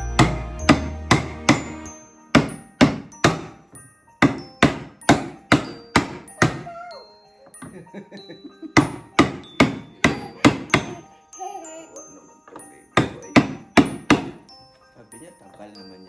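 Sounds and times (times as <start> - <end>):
hammer striking metal: 0.1 - 6.6, 8.8 - 11.0, 13.0 - 14.5.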